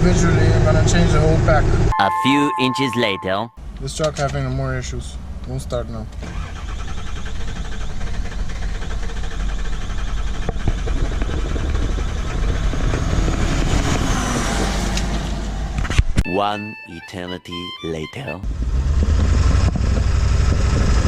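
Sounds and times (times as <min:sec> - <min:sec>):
diesel truck engine rumbling: 0:03.1 - 0:15.8.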